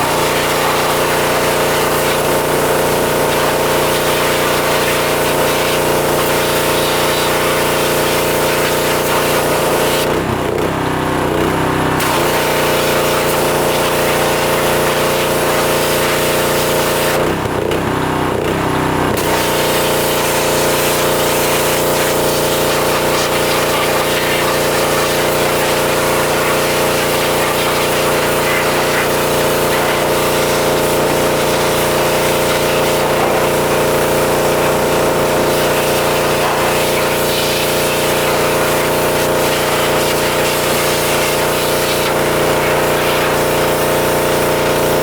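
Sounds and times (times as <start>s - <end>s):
pressure washer motor humming: 0.0s - 45.0s
hiss of water spray: 19.2s - 45.0s.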